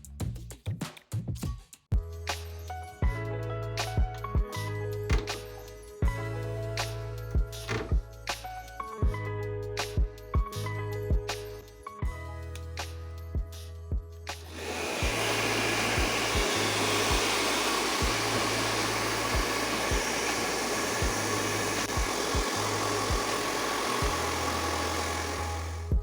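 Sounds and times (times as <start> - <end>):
background music with beat: 0.0 - 15.2, 25.8 - 26.0.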